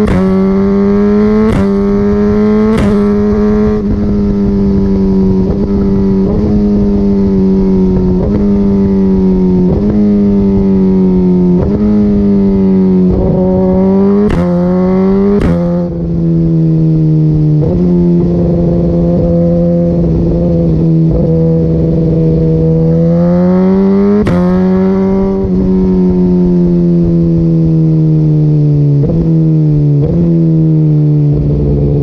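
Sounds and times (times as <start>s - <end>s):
motorcycle engine at high revs: 0.0s - 32.0s
exhaust pops: 2.7s - 3.2s.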